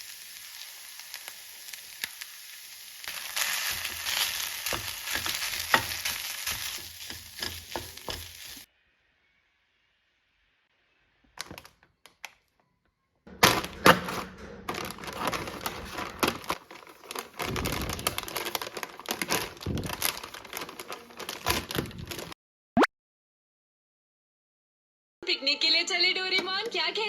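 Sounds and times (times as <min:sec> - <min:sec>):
hard objects clattering and knocking: 0:03.1 - 0:08.6, 0:13.3 - 0:22.4
rapid tapping and thunks: 0:17.4 - 0:18.6, 0:19.2 - 0:20.8.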